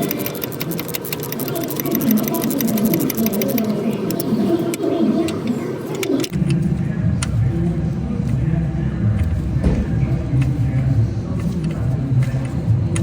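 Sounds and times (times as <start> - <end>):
ratchet wrench clicking: 0.0 - 4.2.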